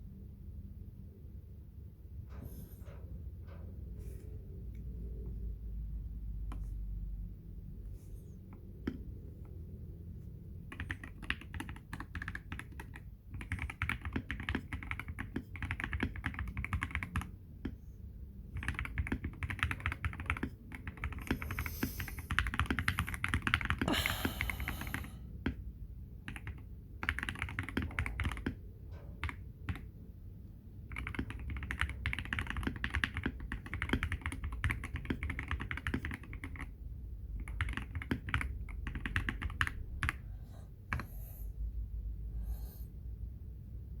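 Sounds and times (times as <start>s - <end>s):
mechanical keyboard typing: 10.6s - 17.8s, 18.5s - 23.9s, 26.2s - 28.6s, 29.2s - 30.0s, 30.8s - 40.2s.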